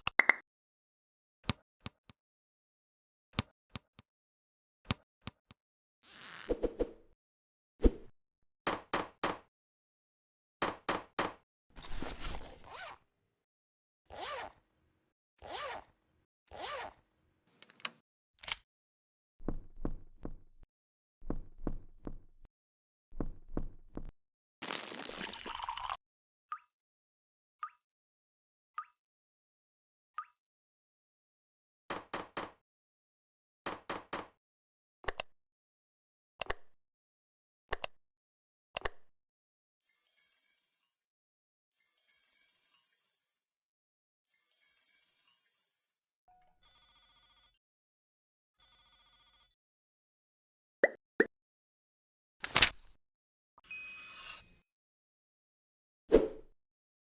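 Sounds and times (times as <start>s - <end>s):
zipper zipping: 12.0s - 13.0s, 14.1s - 14.6s, 15.4s - 15.9s, 16.5s - 17.0s.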